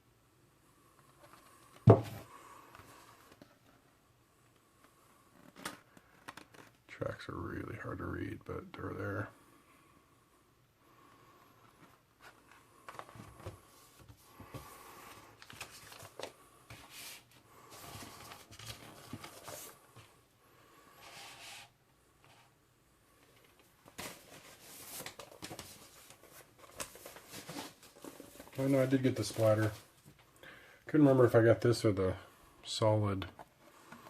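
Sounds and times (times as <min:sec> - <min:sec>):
paper and cardboard rustling: 0:15.4 - 0:20.1, 0:23.8 - 0:30.0.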